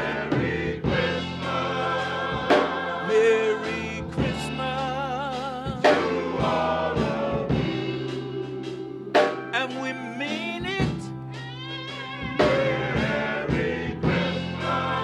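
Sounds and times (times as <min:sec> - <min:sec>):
men's choir singing in harmony: 0:00.0 - 0:09.3, 0:12.4 - 0:15.0.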